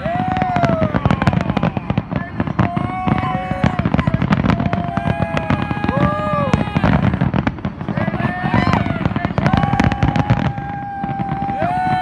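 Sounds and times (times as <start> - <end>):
fireworks crackling pops: 0.0 - 12.0.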